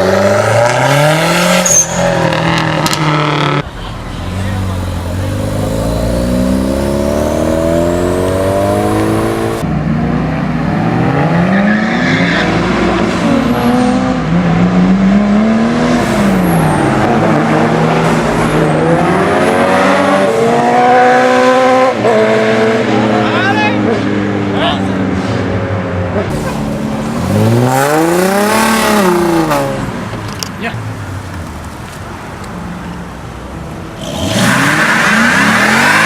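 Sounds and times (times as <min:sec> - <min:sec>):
car engine accelerating: 0:00.0 - 0:25.5, 0:26.1 - 0:30.2, 0:34.0 - 0:36.0
car engine revving: 0:00.0 - 0:30.5, 0:34.0 - 0:36.0.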